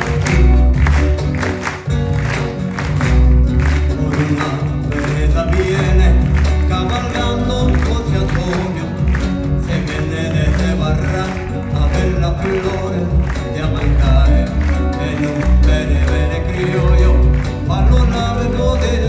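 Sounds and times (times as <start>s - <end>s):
deep bass beat: 0.0s - 19.0s
plucked guitar lines: 0.0s - 19.0s.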